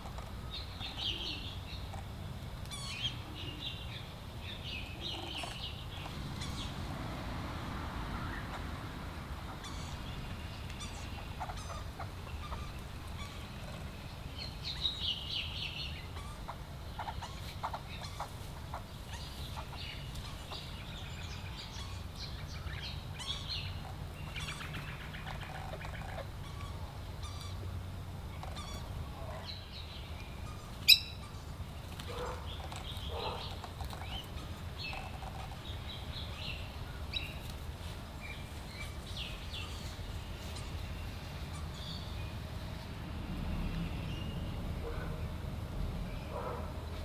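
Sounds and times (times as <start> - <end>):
birds chirping: 0.0 - 47.0.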